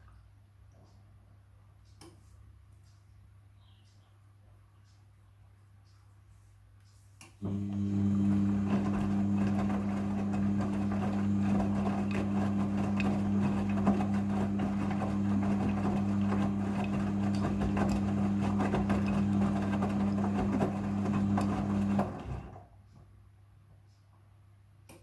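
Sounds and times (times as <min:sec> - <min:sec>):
washing machine running: 0:07.4 - 0:22.7.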